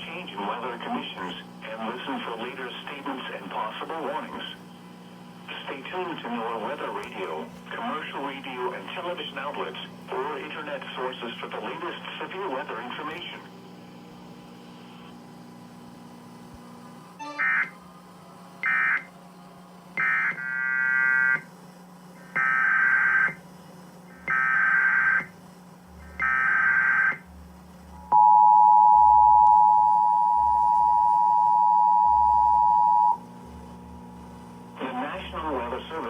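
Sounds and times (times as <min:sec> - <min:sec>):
two-tone attention signal: 0:17.2 - 0:17.8, 0:28.1 - 0:33.2.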